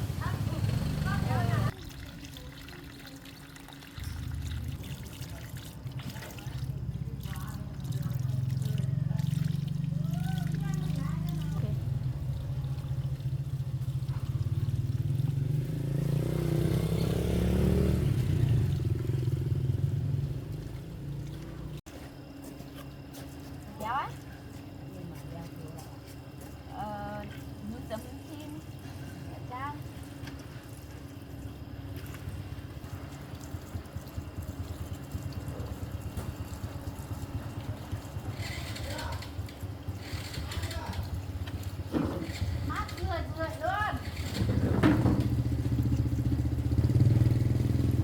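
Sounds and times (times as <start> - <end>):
small engine passing by: 0.0 - 1.8, 7.8 - 21.8, 31.6 - 48.0.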